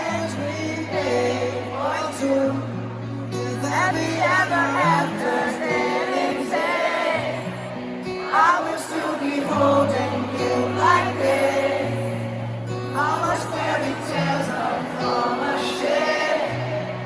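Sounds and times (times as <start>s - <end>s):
person singing: 8.2s - 17.0s.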